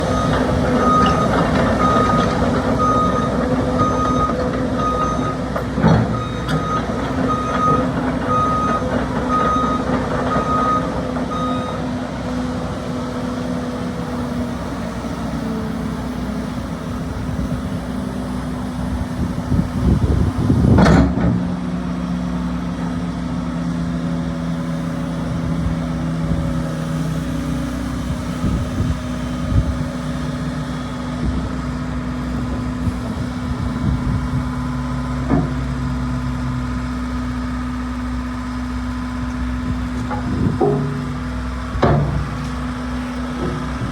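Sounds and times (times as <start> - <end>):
excavator diesel engine running: 0.0 - 43.9
travel alarm beeping: 6.2 - 12.0.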